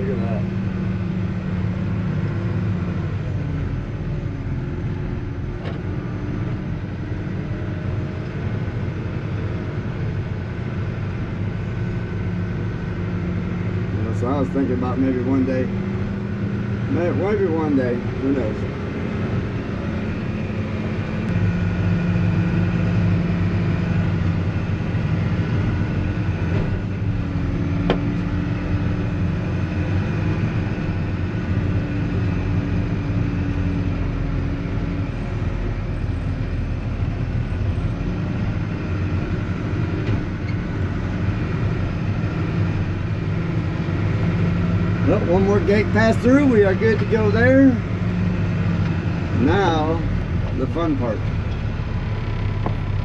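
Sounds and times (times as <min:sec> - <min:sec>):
road noise: 0:00.0 - 0:53.0
vehicle engine running: 0:00.0 - 0:53.0.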